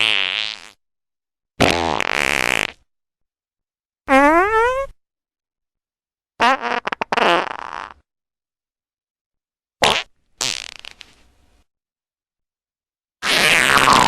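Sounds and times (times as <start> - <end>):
fart sound effects: 0.0 - 0.8, 1.6 - 2.9, 4.1 - 5.0, 6.4 - 8.1, 9.8 - 11.2, 13.2 - 14.0.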